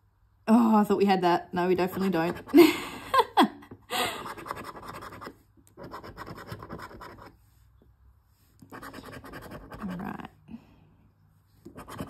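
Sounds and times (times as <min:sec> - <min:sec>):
scratch card being scraped: 0:04.2 - 0:07.4, 0:08.6 - 0:10.1, 0:11.6 - 0:12.0.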